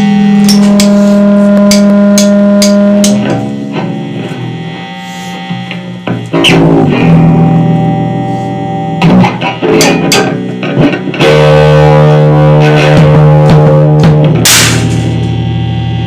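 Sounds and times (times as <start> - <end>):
drum and cymbal hits: 0.0 - 3.3, 14.4 - 15.2
distorted electric guitar chords: 0.0 - 16.0.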